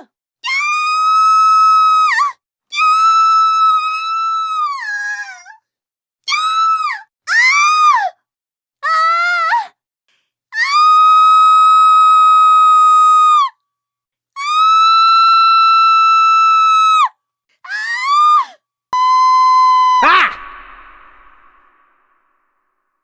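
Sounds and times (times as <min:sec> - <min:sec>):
steady high tone: 0:19.0 - 0:22.3
short rising shriek: 0:19.3 - 0:22.5
long high screams: 0:19.8 - 0:21.8.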